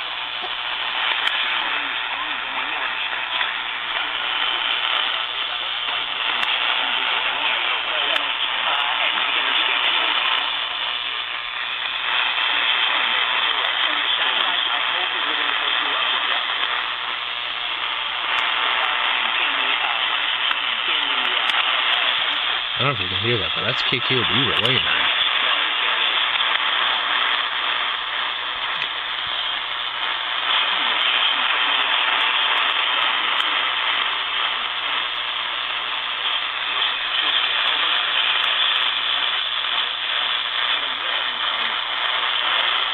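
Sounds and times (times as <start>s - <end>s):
faint radio programme audio: 0.0s - 42.9s
radio static hiss: 0.0s - 42.9s.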